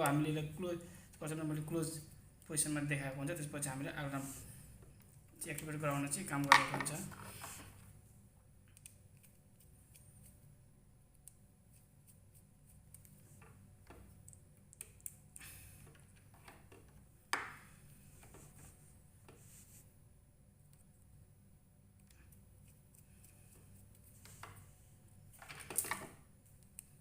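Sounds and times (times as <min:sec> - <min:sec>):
faint low hum: 0:00.0 - 0:27.0
handling clicks of cables and parts: 0:05.0 - 0:07.7, 0:25.4 - 0:27.0.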